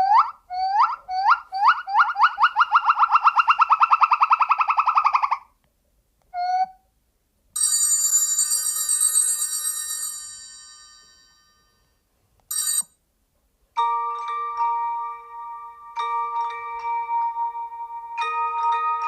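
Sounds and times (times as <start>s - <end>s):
mallet-like ringtone notes: 7.6s - 11.9s, 13.8s - 19.0s
shimmering ringtone chime: 7.6s - 12.9s.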